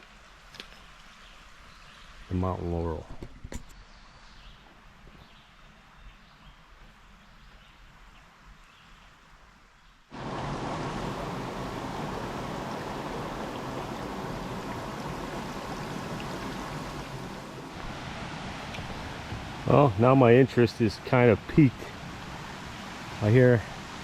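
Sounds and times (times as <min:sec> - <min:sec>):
quiet woodland ambience: 0:00.0 - 0:24.0
creek water rushing: 0:10.1 - 0:24.0.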